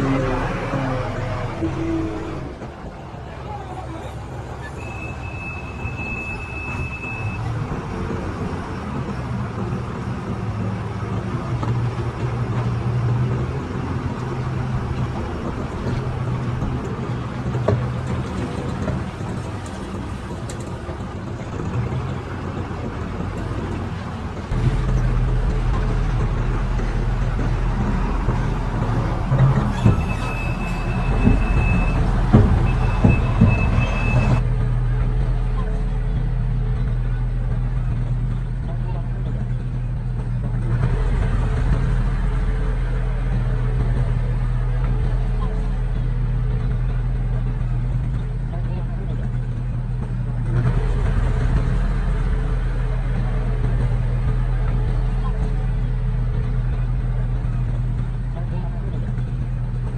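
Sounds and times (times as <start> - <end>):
deep loud engine hum: 0.0 - 59.9
diesel machinery engines running: 0.0 - 59.9
knocks: 7.6 - 34.4.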